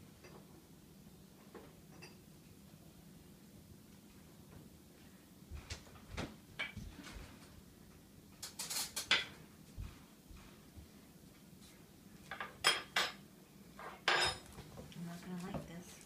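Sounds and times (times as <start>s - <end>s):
kitchen things knocking and clattering: 8.4s - 9.4s, 12.3s - 13.2s, 13.8s - 14.5s.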